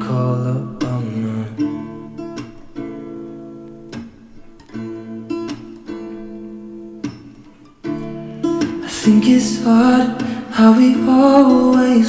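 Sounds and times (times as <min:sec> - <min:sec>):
person singing soft pop song: 0:00.0 - 0:02.0, 0:08.6 - 0:12.0
acoustic guitar strumming chords: 0:00.0 - 0:12.0.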